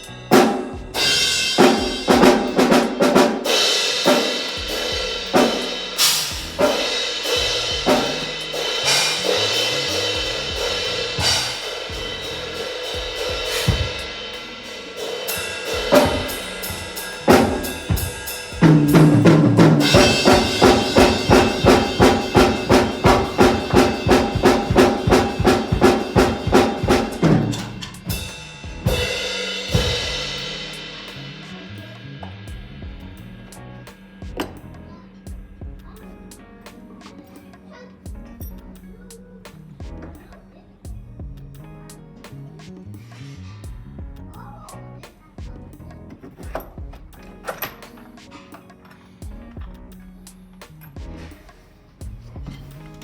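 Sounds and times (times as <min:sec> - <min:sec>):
drum kit playing: 0:00.0 - 0:53.0
held chords: 0:00.0 - 0:53.0.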